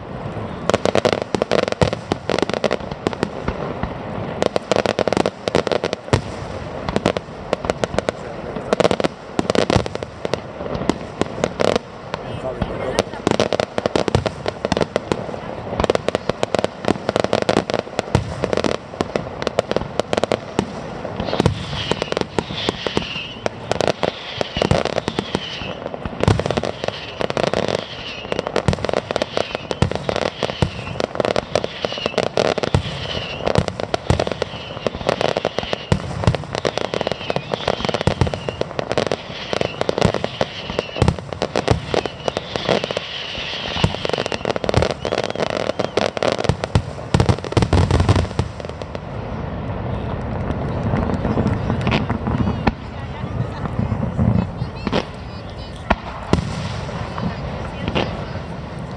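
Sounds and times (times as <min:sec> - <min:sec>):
fireworks bangs and crackles: 0:00.0 - 0:58.9
fireworks falling whistles: 0:00.0 - 0:58.9.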